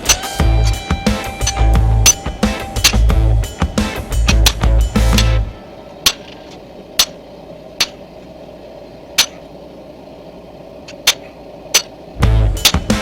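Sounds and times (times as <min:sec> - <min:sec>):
hammer striking steel: 0:00.0 - 0:07.2, 0:09.2 - 0:09.4, 0:10.9 - 0:12.0, 0:12.6 - 0:13.0
steady hum: 0:00.0 - 0:13.0.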